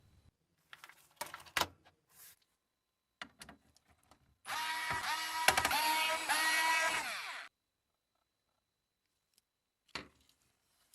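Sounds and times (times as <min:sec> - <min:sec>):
parts being handled: 0:00.6 - 0:02.5
small electric power tool running: 0:04.5 - 0:07.5.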